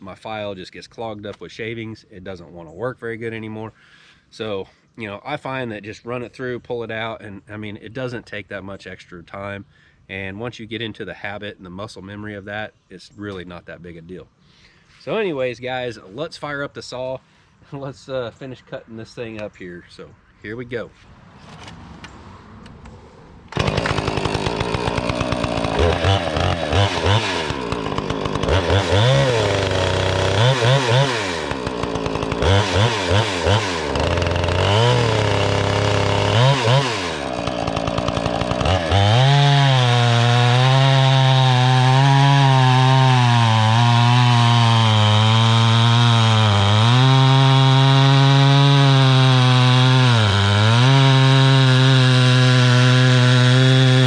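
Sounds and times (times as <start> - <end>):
chainsaw cutting wood: 23.5 - 54.0
chainsaw running: 23.5 - 54.0.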